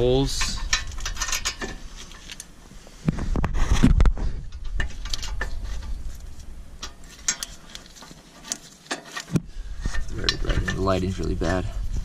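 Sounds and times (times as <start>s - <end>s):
metal clicks and knocks: 0.3s - 2.5s, 4.5s - 11.6s.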